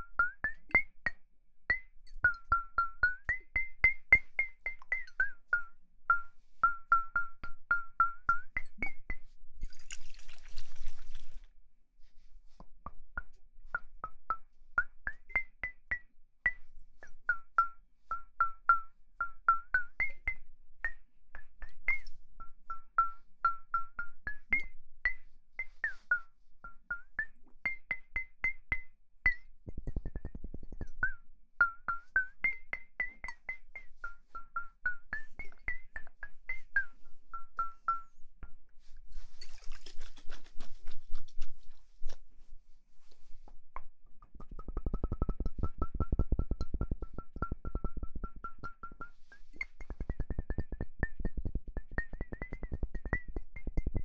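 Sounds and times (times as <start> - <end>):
brief rustle: 39.1 - 42.3.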